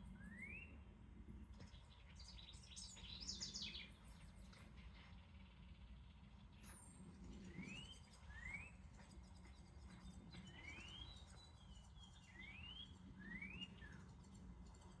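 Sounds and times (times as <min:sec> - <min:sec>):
songbird whistles: 0:00.0 - 0:00.8, 0:07.5 - 0:09.1, 0:09.9 - 0:14.1.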